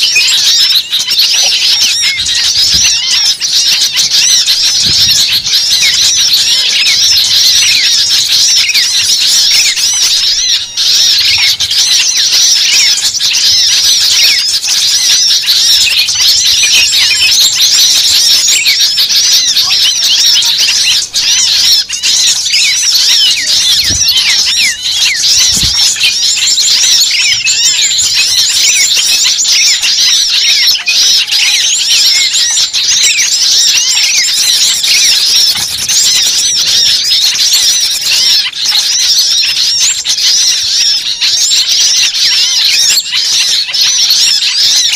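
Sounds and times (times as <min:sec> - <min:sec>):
flock of birds chirping: 0:00.0 - 0:44.9.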